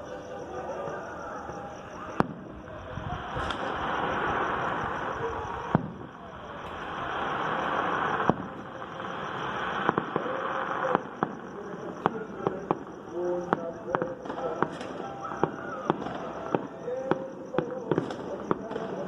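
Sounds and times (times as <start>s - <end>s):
distant fireworks and gunfire cracks: 0.8s - 19.0s
steady rushing hiss: 2.6s - 13.0s.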